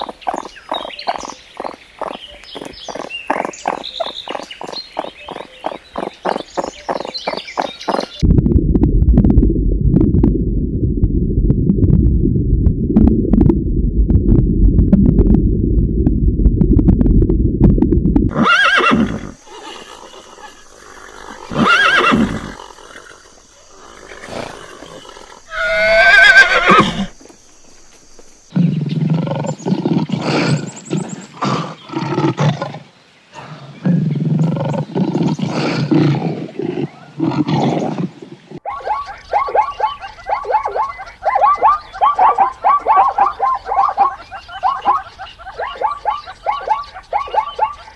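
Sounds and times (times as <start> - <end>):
rhinoceros low rumbling: 14.1 - 31.2
rhinoceros high squealing calls: 18.3 - 28.5, 38.7 - 47.9
rhinoceros snorting: 18.3 - 32.2.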